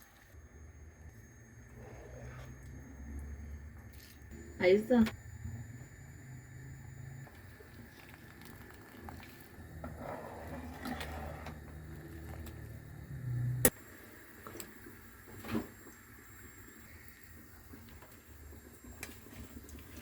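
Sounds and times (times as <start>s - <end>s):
low hum: 11.4s - 13.7s.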